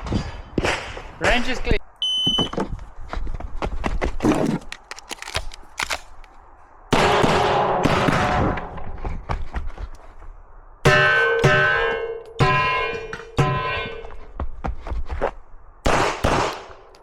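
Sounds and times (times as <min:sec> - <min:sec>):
pistol shots: 0:06.9 - 0:08.6, 0:15.8 - 0:16.9.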